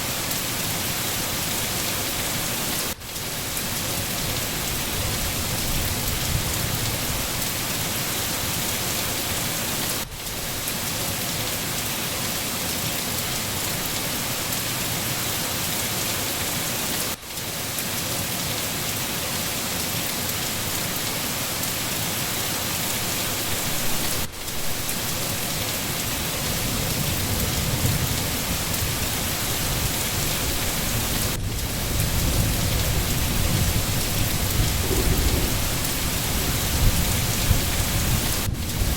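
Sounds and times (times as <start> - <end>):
steady rain: 0.0 - 38.9
low rumble of distant thunder: 31.3 - 38.9.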